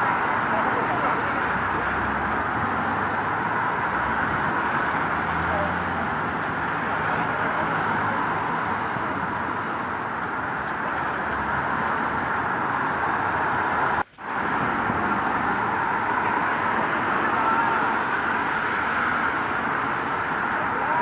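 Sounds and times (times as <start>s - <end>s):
steady rain: 0.0s - 21.0s
traffic on wet streets: 0.0s - 21.0s.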